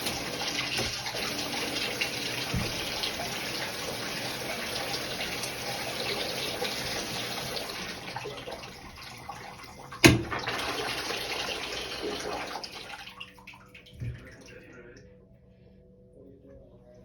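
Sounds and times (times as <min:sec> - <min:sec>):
shower water spraying into tub: 0:00.0 - 0:13.1.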